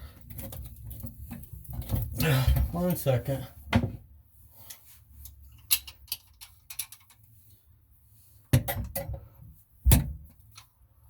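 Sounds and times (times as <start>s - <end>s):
clicks and knocks of plumbing fittings: 0.0s - 3.0s, 4.6s - 7.3s, 8.5s - 10.8s.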